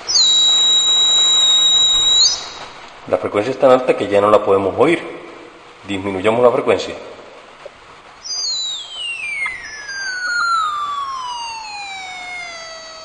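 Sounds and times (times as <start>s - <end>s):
electronic tone sliding down: 0.0s - 2.8s, 8.2s - 13.0s.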